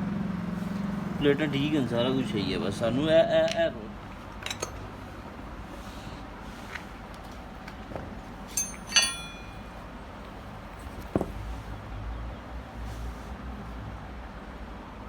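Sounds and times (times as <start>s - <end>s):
metallic clinks: 4.4s - 4.9s, 8.5s - 9.8s
dull knock: 11.0s - 11.4s.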